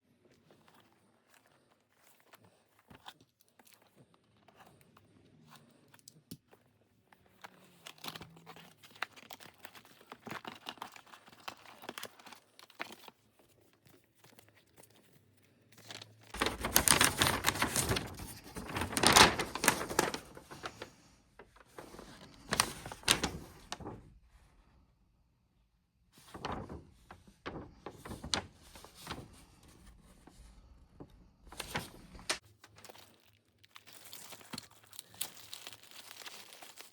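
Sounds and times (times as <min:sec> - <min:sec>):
wrapping crinkling: 0:07.2 - 0:24.2, 0:26.2 - 0:36.9.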